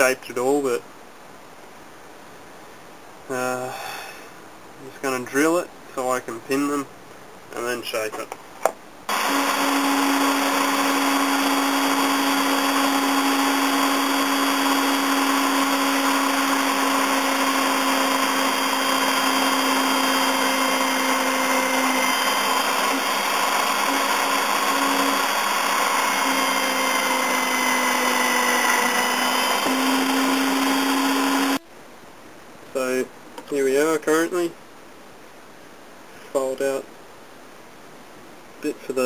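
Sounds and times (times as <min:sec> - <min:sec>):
electric drill boring wood: 0:09.1 - 0:31.6.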